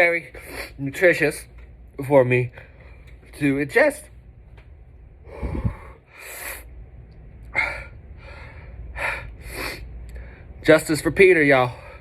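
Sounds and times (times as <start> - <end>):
man breathing hard: 5.2 - 6.8, 7.4 - 10.6, 11.7 - 12.0.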